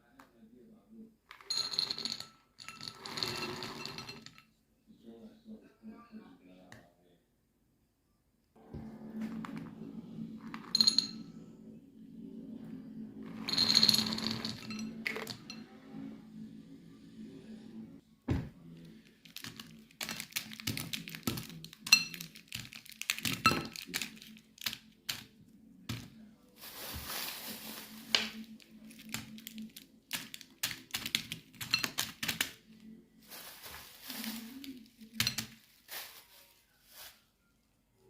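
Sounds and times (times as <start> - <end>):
faint low hum: 4.7 - 19.8
small hard objects knocking: 19.2 - 25.3, 28.1 - 32.6
rustling or scraping: 26.6 - 29.7, 33.2 - 37.3.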